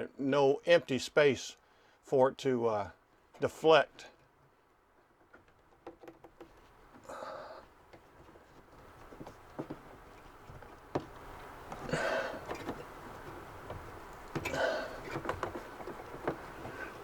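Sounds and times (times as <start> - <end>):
scraping rustle: 7.9 - 17.0.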